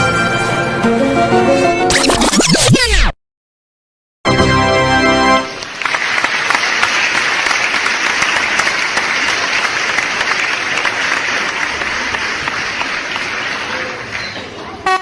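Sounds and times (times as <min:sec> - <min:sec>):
crowd applause: 0:05.5 - 0:15.0.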